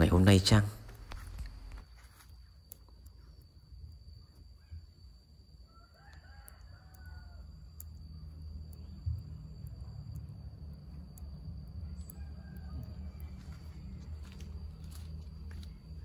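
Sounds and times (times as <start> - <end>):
rooster crowing faintly: 4.2 - 8.9, 11.7 - 15.1
low steady rumble: 7.4 - 16.0.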